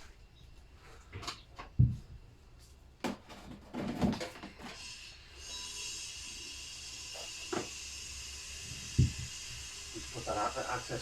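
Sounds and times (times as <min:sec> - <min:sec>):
knocks and clatter of parts: 0:03.0 - 0:04.8
steady hiss: 0:04.7 - 0:11.0.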